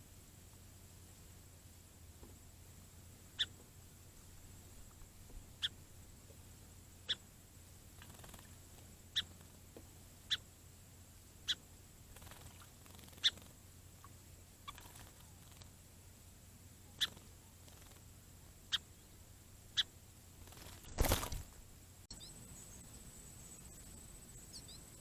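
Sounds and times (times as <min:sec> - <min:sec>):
sparrow chip calls: 0:03.3 - 0:03.6, 0:04.8 - 0:05.8, 0:07.0 - 0:07.2, 0:08.0 - 0:09.5, 0:10.2 - 0:10.5, 0:11.4 - 0:15.7, 0:16.8 - 0:18.0, 0:18.7 - 0:21.4, 0:22.1 - 0:25.0.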